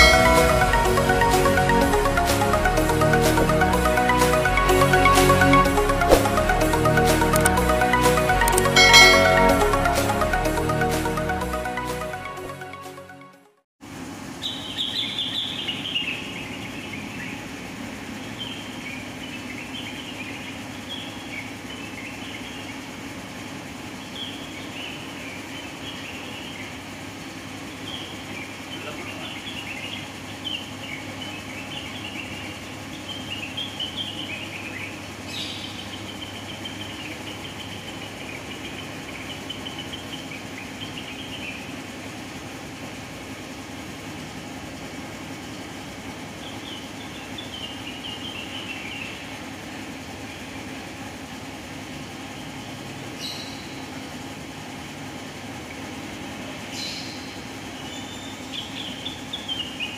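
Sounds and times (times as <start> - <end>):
sharp clicks: 7.3 - 7.6, 8.4 - 8.8.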